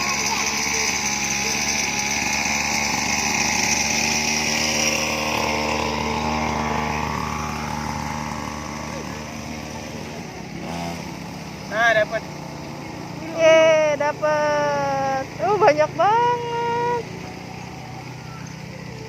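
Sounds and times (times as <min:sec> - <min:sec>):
toy motor whirring: 0:00.0 - 0:09.2.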